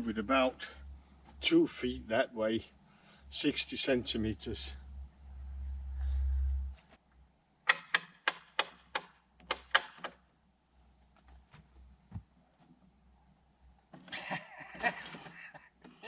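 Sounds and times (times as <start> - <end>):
low rumble: 4.6 - 6.8
sharp clicks or knocks: 7.6 - 10.2.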